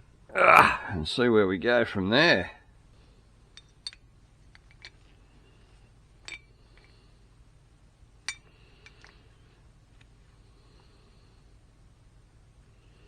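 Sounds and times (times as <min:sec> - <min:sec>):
small metal parts clinking: 0:03.5 - 0:05.0, 0:06.2 - 0:06.9, 0:08.3 - 0:09.3.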